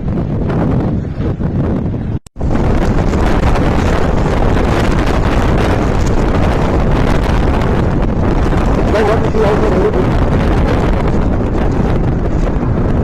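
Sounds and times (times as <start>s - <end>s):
strong wind buffeting microphone: 0.0s - 13.0s.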